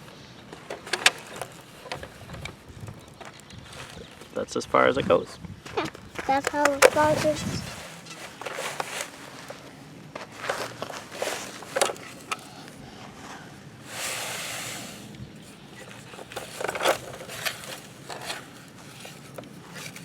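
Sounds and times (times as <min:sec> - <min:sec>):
toy trucks scraping through dirt: 0:00.0 - 0:04.4, 0:06.2 - 0:20.0
dirt sliding hiss: 0:06.3 - 0:19.7.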